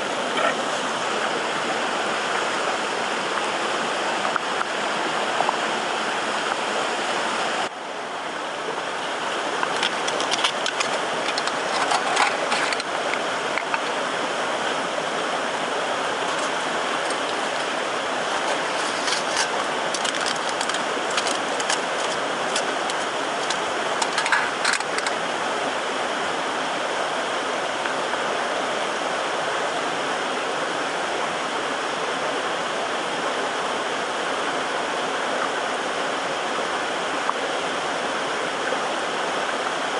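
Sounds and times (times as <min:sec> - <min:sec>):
mountain stream rushing: 0:00.0 - 0:39.9
sharp crackles and clicks: 0:09.6 - 0:13.9, 0:16.2 - 0:25.2.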